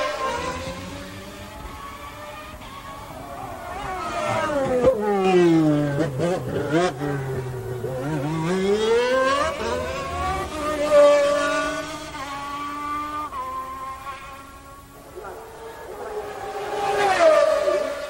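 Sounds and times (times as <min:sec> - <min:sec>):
racing car engine revving: 0:00.0 - 0:18.0.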